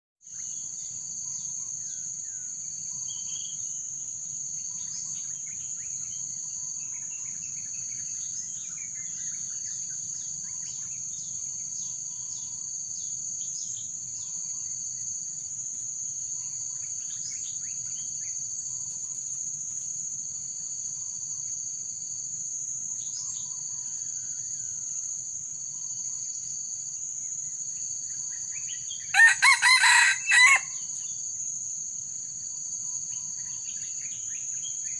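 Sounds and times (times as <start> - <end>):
high-pitched insect drone: 27.6 - 31.3
insect trilling: 29.0 - 31.2
rooster crowing: 29.1 - 30.9.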